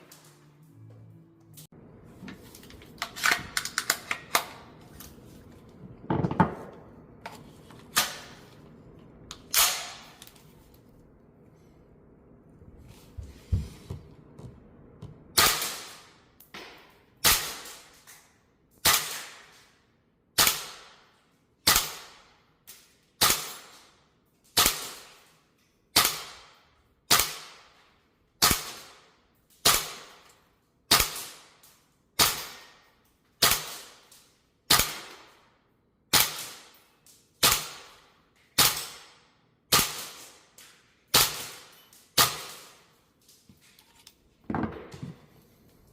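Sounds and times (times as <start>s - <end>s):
airsoft rifle shots: 15.4s - 16.2s, 34.7s - 35.3s.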